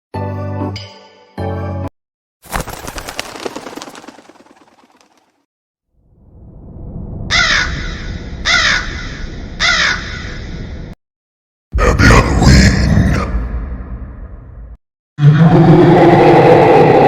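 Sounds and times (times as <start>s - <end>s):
crow cawing: 7.3s - 10.6s.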